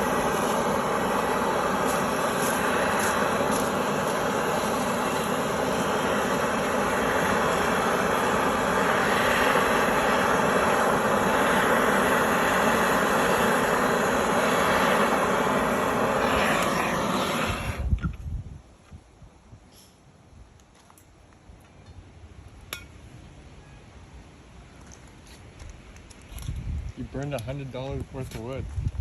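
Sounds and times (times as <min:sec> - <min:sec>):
torch flame roaring: 0:00.0 - 0:18.2
torch shutting off pop: 0:00.0 - 0:18.2.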